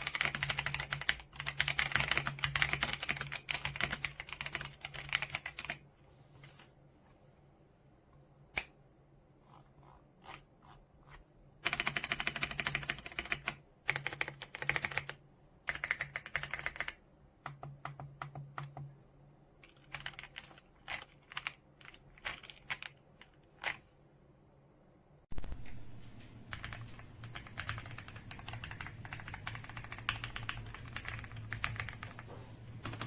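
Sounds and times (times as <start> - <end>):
mechanical keyboard typing: 0.0 - 5.8, 11.6 - 18.9, 19.6 - 23.8, 26.5 - 33.0.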